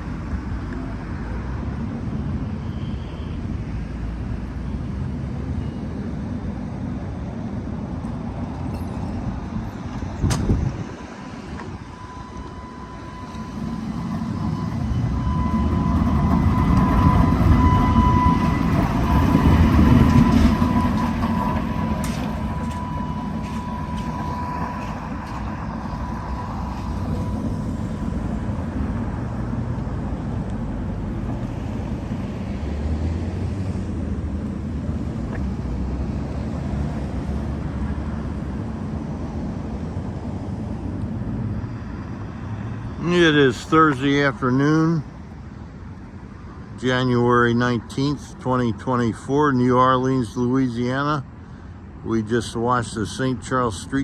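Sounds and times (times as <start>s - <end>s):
streetcar rumbling: 0.0s - 54.0s
steel wheels squealing: 8.7s - 28.6s.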